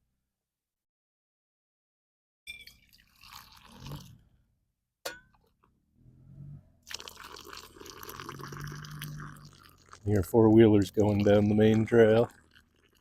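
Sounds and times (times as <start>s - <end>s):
sharp metallic clink: 5.0s - 5.4s
engines droning past: 5.8s - 6.8s.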